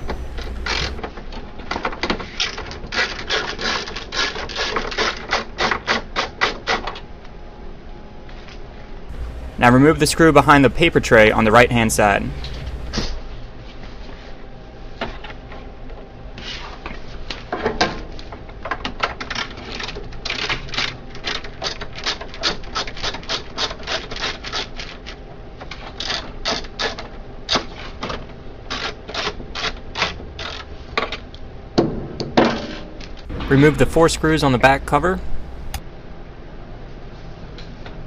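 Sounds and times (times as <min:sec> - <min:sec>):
steady low hum: 0:00.0 - 0:01.0, 0:09.1 - 0:13.5, 0:33.2 - 0:37.0.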